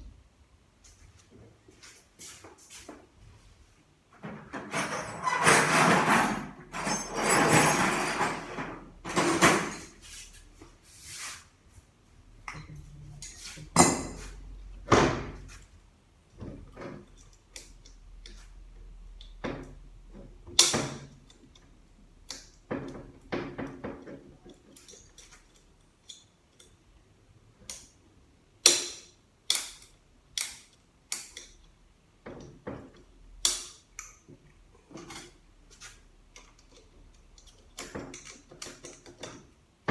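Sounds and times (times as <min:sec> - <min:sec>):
metal tools clinking: 0:04.6 - 0:10.0
metal tools scraping on steel: 0:04.6 - 0:10.0.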